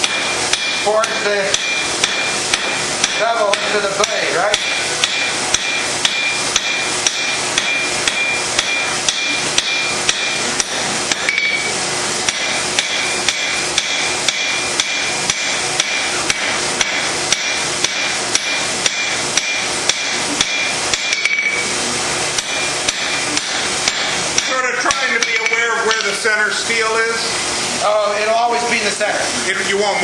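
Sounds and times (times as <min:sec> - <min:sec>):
hammer striking steel on anvil: 0:00.0 - 0:00.8, 0:01.5 - 0:11.7, 0:12.3 - 0:21.6.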